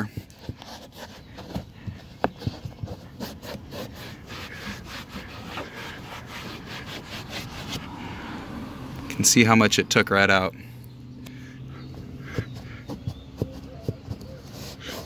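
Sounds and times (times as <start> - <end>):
towel rubbing on leather: 2.4 - 8.1.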